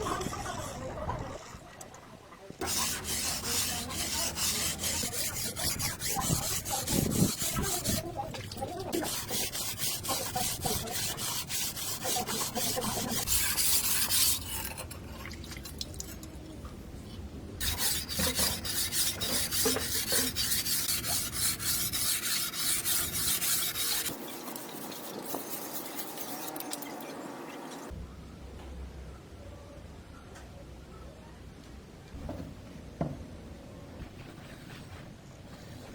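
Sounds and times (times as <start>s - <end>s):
abrasive rasping on steel blade: 2.6s - 15.0s, 17.6s - 26.6s
soft smooth rubbing: 34.0s - 35.9s.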